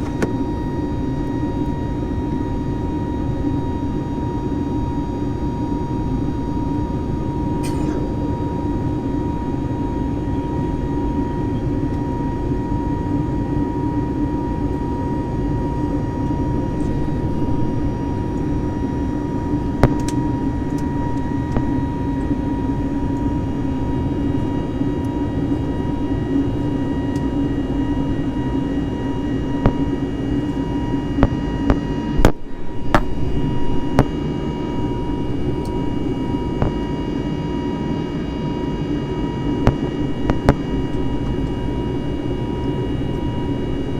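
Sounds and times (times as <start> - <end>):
jet engine drone in cabin: 0.0 - 43.9.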